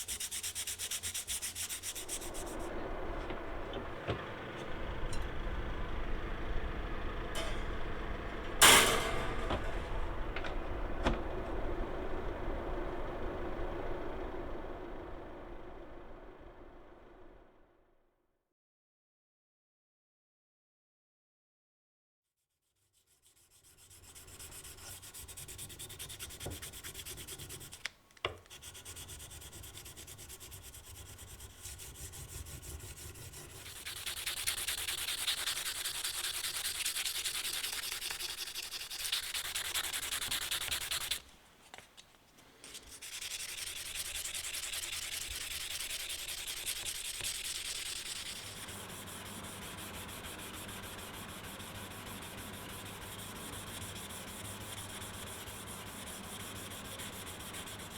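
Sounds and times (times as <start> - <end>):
abrasive sanding: 0.0 - 3.2, 23.1 - 27.8, 28.5 - 41.2, 42.6 - 57.9
low hum: 1.8 - 17.7.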